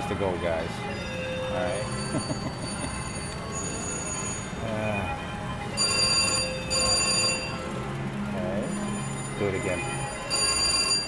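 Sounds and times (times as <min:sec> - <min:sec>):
ringing bell tones: 0:00.9 - 0:04.7, 0:05.8 - 0:07.7, 0:08.6 - 0:11.0
slot machine electronic chimes: 0:05.8 - 0:07.6, 0:08.6 - 0:11.0.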